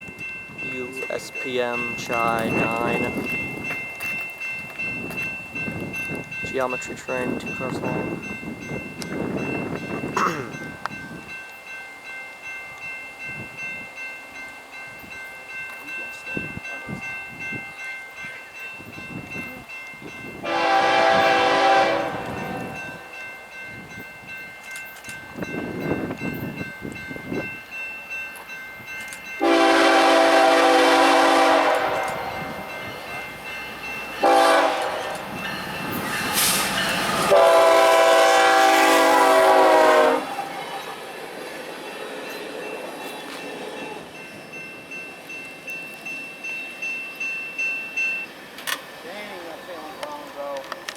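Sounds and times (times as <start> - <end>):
passing train rumble: 0.0 - 50.9
locomotive air horn blasts: 20.4 - 23.1, 29.4 - 32.6, 34.2 - 35.2, 37.2 - 40.4.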